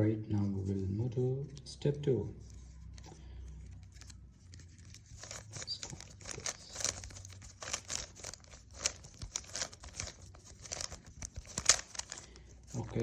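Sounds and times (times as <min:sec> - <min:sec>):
plastic puzzle cube clicking: 0:03.8 - 0:12.8.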